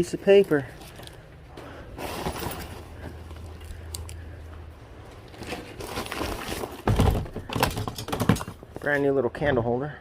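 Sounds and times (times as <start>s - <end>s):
small clicks of items handled: 3.4s - 4.3s.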